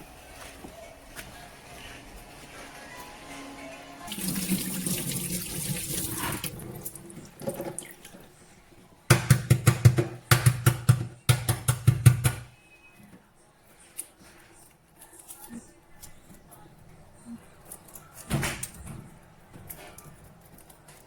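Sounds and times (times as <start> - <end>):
tap running into a sink: 4.1 - 8.2.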